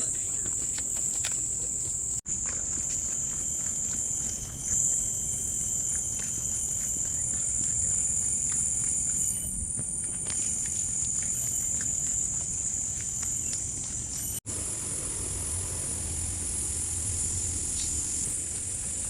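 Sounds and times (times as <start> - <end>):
faint footsteps on a trail: 0.0 - 14.4
insects droning: 0.0 - 19.0.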